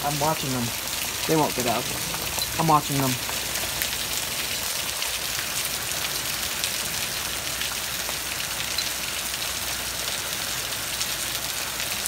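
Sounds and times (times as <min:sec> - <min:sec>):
hailstones ticking on hard surfaces: 0:00.0 - 0:09.6
hail and rain falling: 0:00.0 - 0:12.0.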